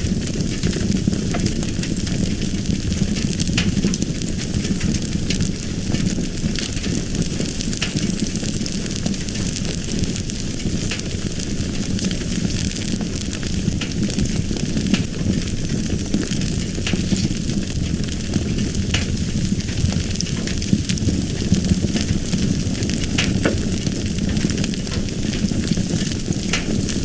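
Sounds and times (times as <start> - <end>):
fire burning with crackles: 0.0 - 27.0.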